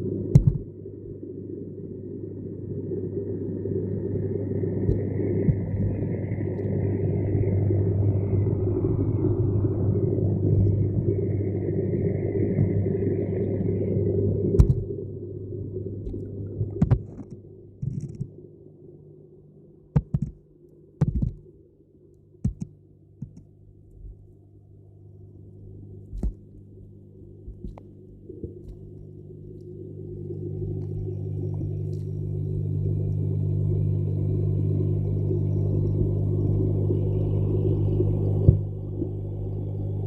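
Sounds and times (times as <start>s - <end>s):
low rumble: 0.0s - 40.0s
sharp knocks and clicks: 0.3s - 0.7s, 20.0s - 20.4s, 21.0s - 21.4s, 22.4s - 23.5s.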